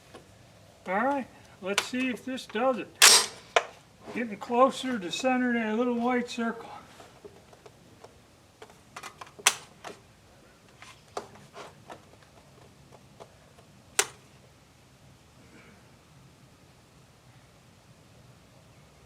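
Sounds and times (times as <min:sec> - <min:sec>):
loud sharp cracks: 0:03.0 - 0:03.7.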